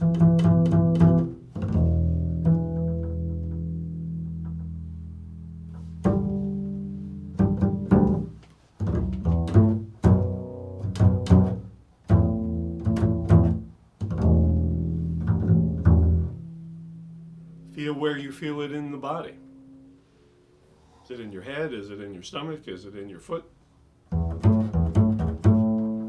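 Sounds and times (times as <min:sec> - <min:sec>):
deep plucked string instrument: 0:00.0 - 0:17.8, 0:24.1 - 0:26.0.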